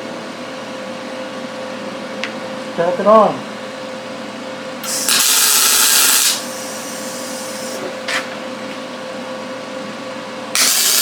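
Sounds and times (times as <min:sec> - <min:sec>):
welder crackling hiss: 0:04.8 - 0:07.8, 0:10.6 - 0:11.0
welding arc blip: 0:04.8 - 0:07.8, 0:10.6 - 0:11.0.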